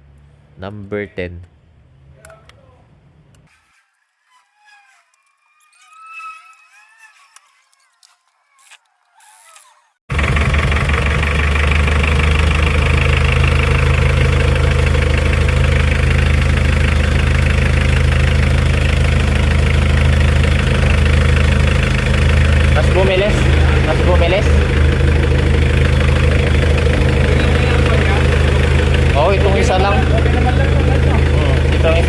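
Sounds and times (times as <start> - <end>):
diesel engine idling: 10.1 - 32.0.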